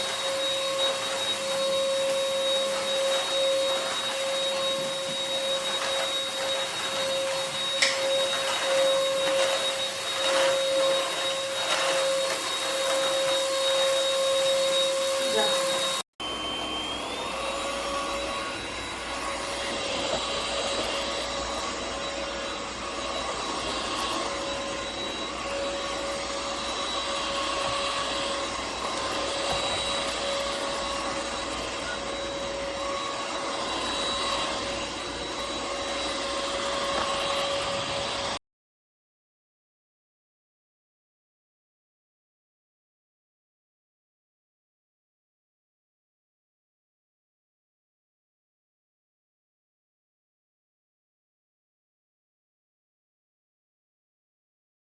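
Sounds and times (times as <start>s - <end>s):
stick vacuum whining: 0.0s - 38.4s.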